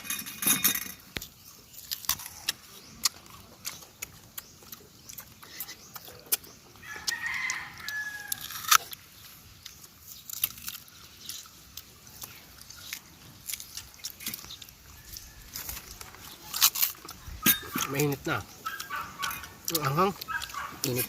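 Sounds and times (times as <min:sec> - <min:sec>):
crunchy biting and chewing: 0:00.0 - 0:21.0
rooster crowing: 0:06.8 - 0:08.8.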